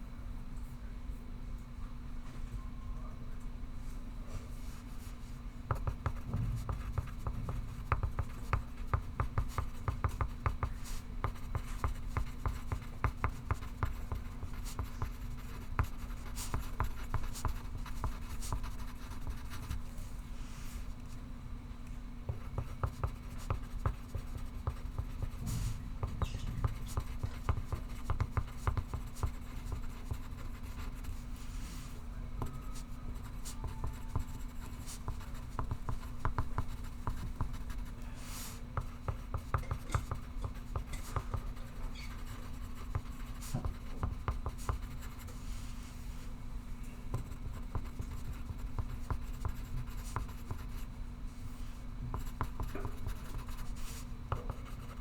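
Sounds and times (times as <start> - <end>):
steady low hum: 0.0 - 55.0
pencil scratching on paper: 5.7 - 19.8, 22.3 - 31.8, 32.5 - 45.4, 47.2 - 50.9, 52.1 - 55.0.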